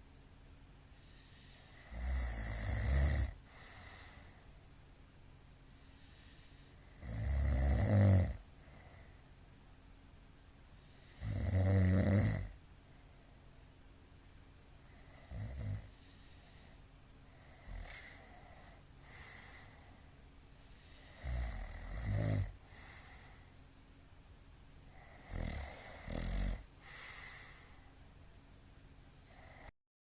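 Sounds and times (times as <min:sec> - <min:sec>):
faint breaths: 0:00.8 - 0:04.8, 0:05.6 - 0:07.1, 0:08.4 - 0:09.4, 0:12.8 - 0:24.2, 0:24.8 - 0:28.5, 0:29.1 - 0:29.7
man snoring loudly: 0:01.6 - 0:04.3, 0:06.8 - 0:08.4, 0:11.0 - 0:12.6, 0:14.9 - 0:15.9, 0:21.0 - 0:23.4, 0:24.9 - 0:27.8, 0:29.3 - 0:29.7.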